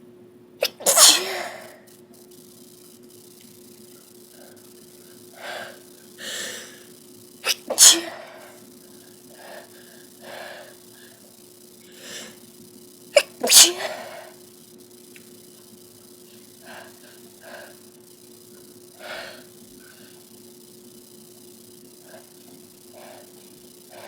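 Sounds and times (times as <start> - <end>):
person sneezing: 0.6 - 1.9, 7.4 - 8.4, 13.2 - 14.4
soft breaths: 3.9 - 7.0, 8.0 - 12.5, 15.6 - 20.5, 21.1 - 24.0.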